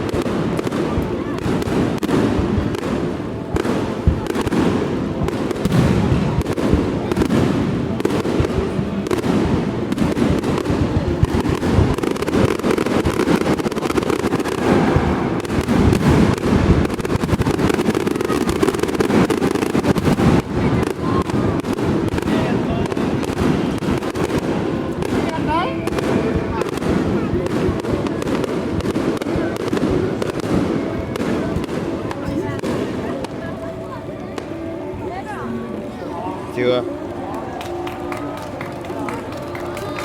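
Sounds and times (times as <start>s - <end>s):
fireworks bangs and crackle: 0.0s - 40.0s.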